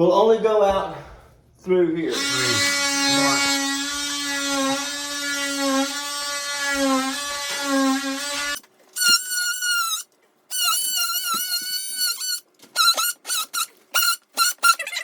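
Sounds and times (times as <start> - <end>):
multi-tool buzzing whine: 2.1 - 9.4.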